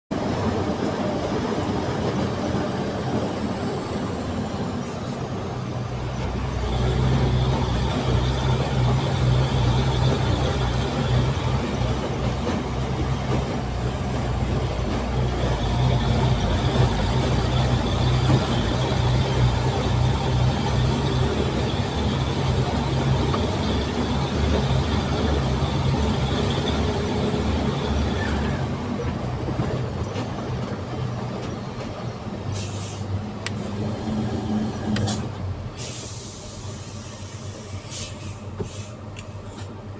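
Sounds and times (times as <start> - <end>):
heavy machinery engine drone: 0.1 - 39.9.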